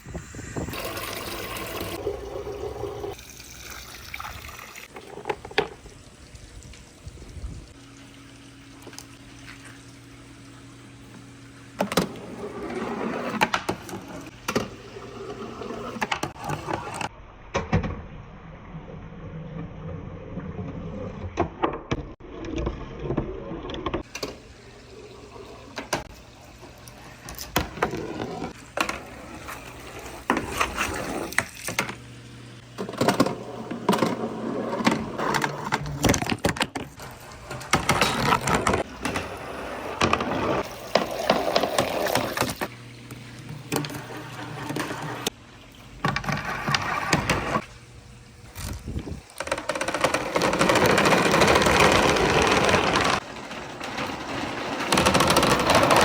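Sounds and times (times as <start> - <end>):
marbles rolling on wooden track: 32.8 - 42.7, 43.7 - 45.3, 49.4 - 56.0.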